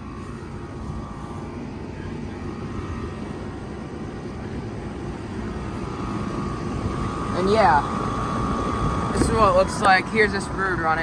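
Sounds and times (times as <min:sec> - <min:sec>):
condenser fan rushing: 0:00.0 - 0:11.0
faint steady whine: 0:00.0 - 0:11.0.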